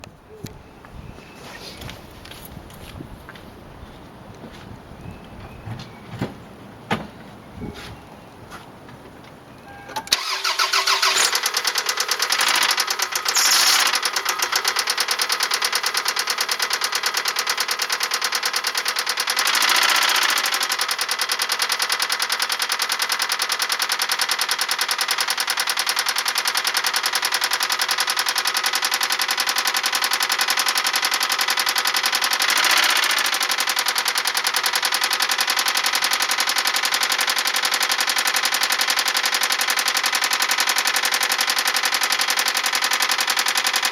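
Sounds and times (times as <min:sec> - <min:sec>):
car engine knocking: 0:10.2 - 0:43.9.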